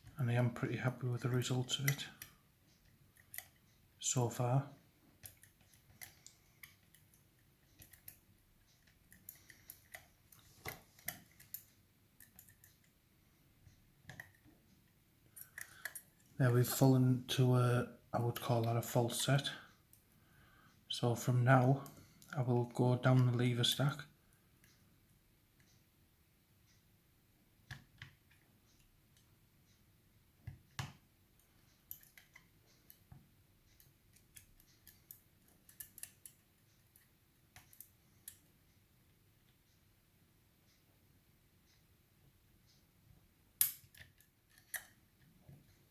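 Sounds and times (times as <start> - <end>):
small metallic clicks in a lock: 3.2 - 3.6, 5.2 - 12.9, 15.3 - 16.2, 31.8 - 33.0, 33.7 - 38.5, 43.6 - 45.0
lock pick metallic clicks: 15.3 - 16.2, 31.9 - 32.5, 34.1 - 36.4, 43.6 - 45.0.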